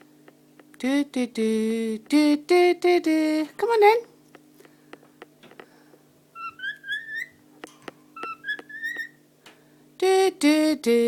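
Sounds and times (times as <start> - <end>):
person humming a tune: 0.8 - 3.5, 10.0 - 11.0
cockatiel whistling: 6.4 - 7.4, 8.2 - 9.2.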